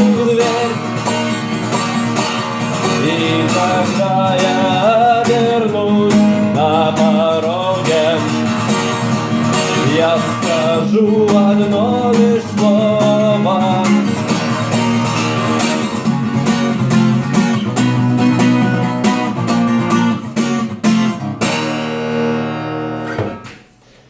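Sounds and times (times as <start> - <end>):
person singing: 0.0 - 1.4, 2.7 - 14.5
acoustic guitar strumming: 0.0 - 24.0.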